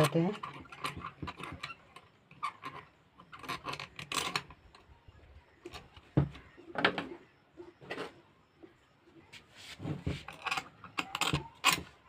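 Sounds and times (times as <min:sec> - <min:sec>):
screwdriver scraping on screws: 0:00.0 - 0:04.9, 0:10.0 - 0:12.0.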